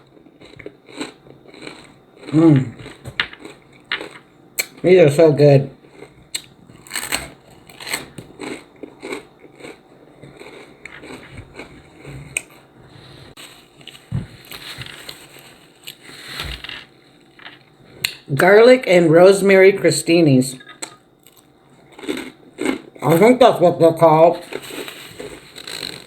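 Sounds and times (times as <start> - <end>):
person chewing crunchy toast: 0.0 - 4.8, 5.8 - 12.8, 13.4 - 16.3, 20.8 - 23.2, 24.4 - 26.0.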